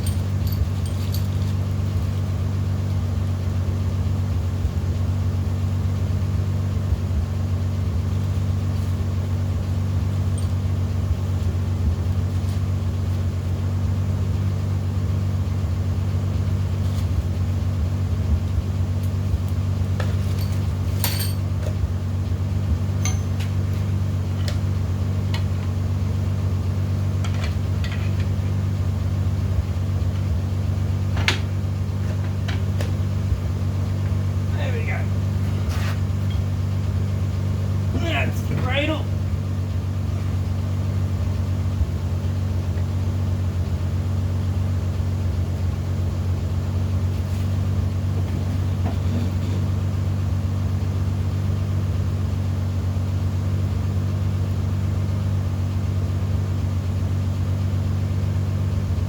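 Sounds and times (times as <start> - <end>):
metallic clinks of hand tools: 0.0 - 1.5, 20.3 - 21.4, 23.0 - 23.4
steady low hum: 0.0 - 59.0.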